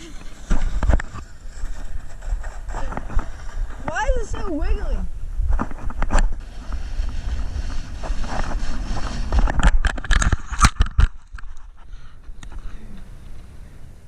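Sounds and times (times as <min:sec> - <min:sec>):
sharp scrapes and clicks: 0:00.0 - 0:04.1, 0:05.5 - 0:12.7
wind buffeting microphone: 0:00.0 - 0:14.0.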